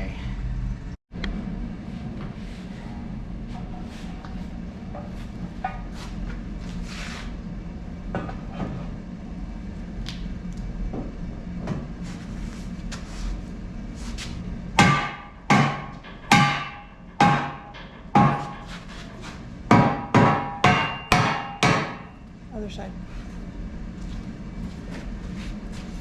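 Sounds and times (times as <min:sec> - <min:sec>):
low shop hum: 0:00.0 - 0:26.0.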